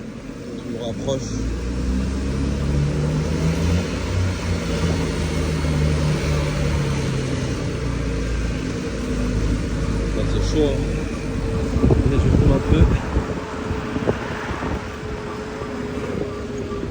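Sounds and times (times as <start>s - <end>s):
bus engine running: 0.0s - 16.9s.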